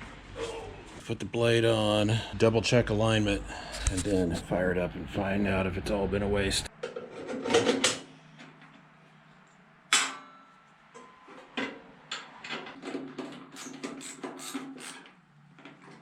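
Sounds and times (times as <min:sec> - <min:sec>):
sharp metal clank: 0:09.9 - 0:11.2
metal clanks and clicks: 0:09.9 - 0:16.0.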